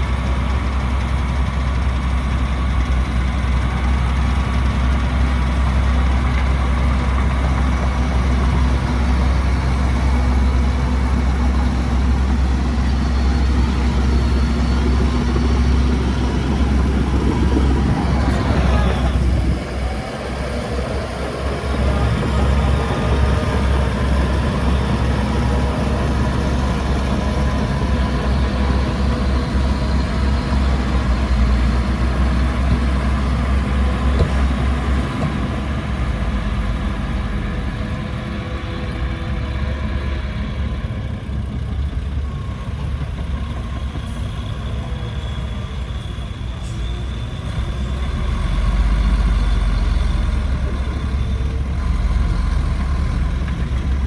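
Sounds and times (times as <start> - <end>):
heavy diesel engine rumbling: 0.0 - 54.0.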